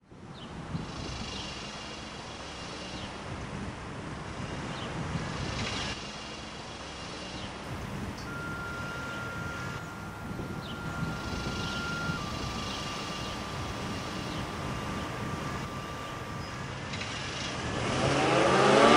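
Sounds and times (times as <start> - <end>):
vehicle traffic rumble: 0.1 - 18.9
thin steady high tone: 7.7 - 18.4
faint short chirps: 8.1 - 17.1.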